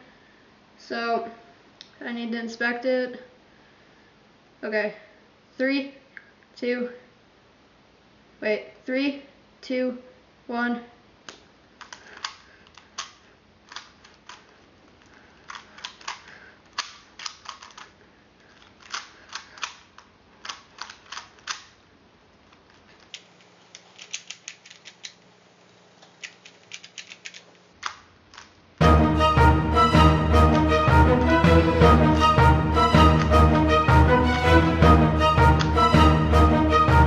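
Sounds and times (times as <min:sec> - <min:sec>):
puzzle cube clicking: 0:11.3 - 0:21.8, 0:22.5 - 0:25.2, 0:26.1 - 0:28.6.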